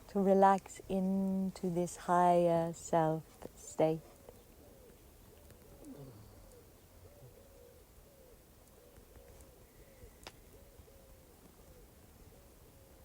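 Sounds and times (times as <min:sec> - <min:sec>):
bird hooting: 0:04.2 - 0:13.0
faint click: 0:10.2 - 0:10.5.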